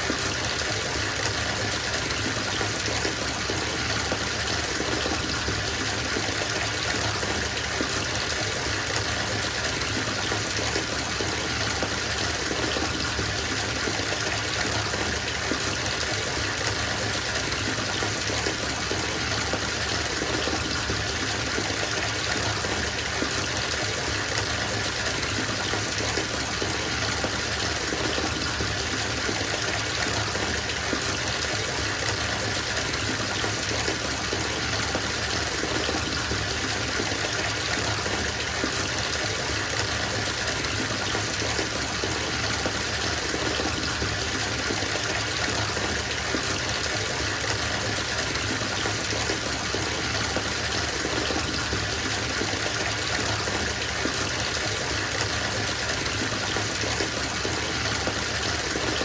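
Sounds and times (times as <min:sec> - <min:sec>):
water pouring into bathtub: 0:00.0 - 0:59.0.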